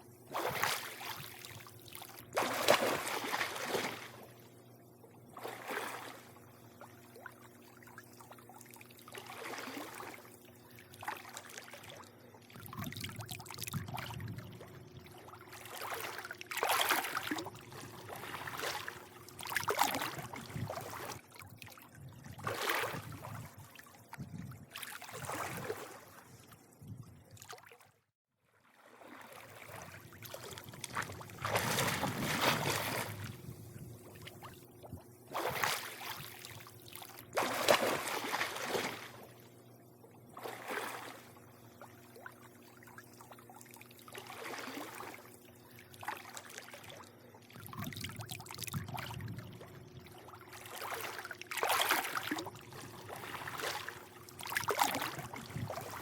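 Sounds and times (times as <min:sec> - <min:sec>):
faint steady hum: 0:00.0 - 0:27.6, 0:28.6 - 0:56.0
pool water lapping and sloshing: 0:00.0 - 0:56.0.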